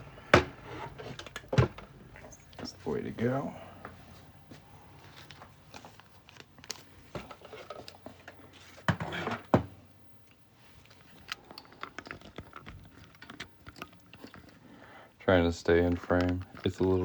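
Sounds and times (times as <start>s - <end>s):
light clicks and knocks of parts: 10.2s - 17.0s.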